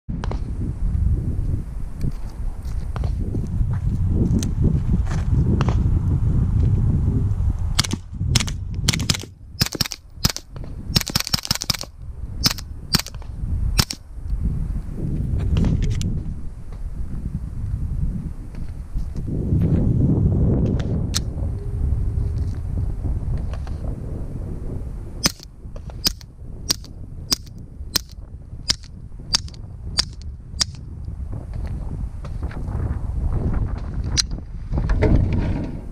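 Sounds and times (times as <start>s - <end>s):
suppressed gunshots: 7.8s - 13.2s, 13.8s - 14.0s, 25.2s - 30.8s.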